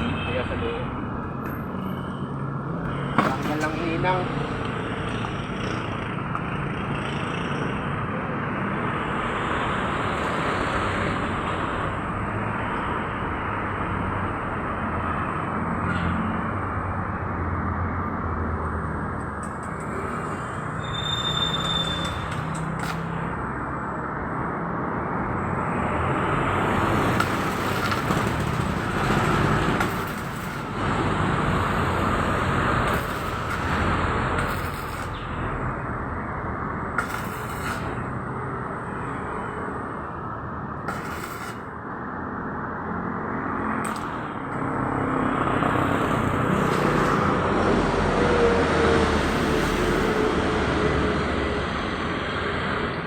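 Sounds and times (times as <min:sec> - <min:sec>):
welding arc crackling and hissing: 0:19.4 - 0:23.6, 0:26.6 - 0:35.7, 0:36.8 - 0:38.3, 0:40.8 - 0:41.8, 0:43.8 - 0:45.0, 0:49.2 - 0:50.8
sharp welding pops: 0:21.6 - 0:23.4, 0:27.0 - 0:30.9, 0:32.8 - 0:35.3, 0:36.9 - 0:38.2, 0:40.8 - 0:41.8, 0:43.8 - 0:44.8.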